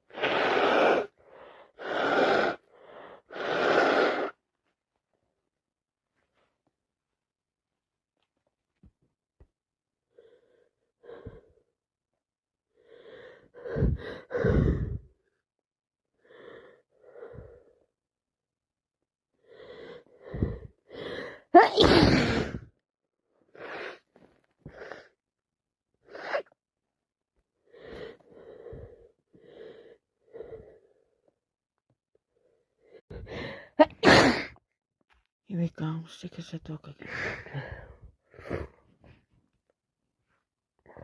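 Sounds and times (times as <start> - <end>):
gasping breaths: 12.8 - 15.3, 19.4 - 21.6, 27.6 - 31.4
person sneezing: 21.6 - 22.7, 33.8 - 34.6.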